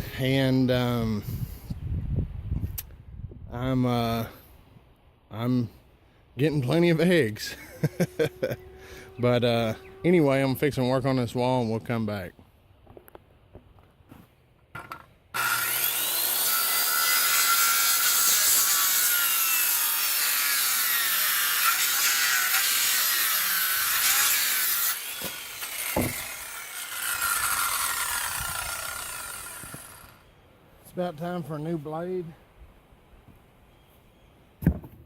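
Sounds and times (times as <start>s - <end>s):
power saw cutting wood: 7.7s - 11.1s, 15.3s - 30.3s.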